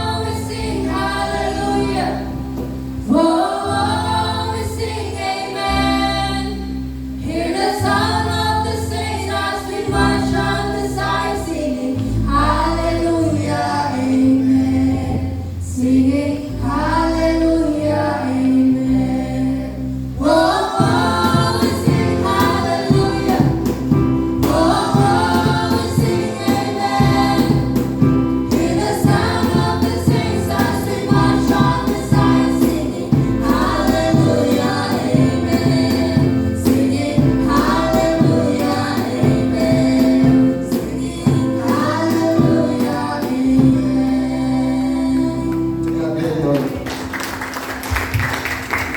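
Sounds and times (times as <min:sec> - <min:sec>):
choir singing gospel song: 0:00.0 - 0:46.5
keyboard and bass backing: 0:00.0 - 0:48.9
band with steady beat: 0:20.8 - 0:44.1.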